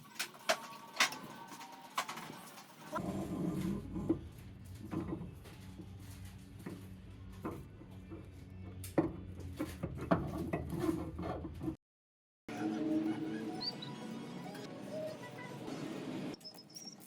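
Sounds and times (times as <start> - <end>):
hand tools and metal parts clinking: 0.0 - 3.0.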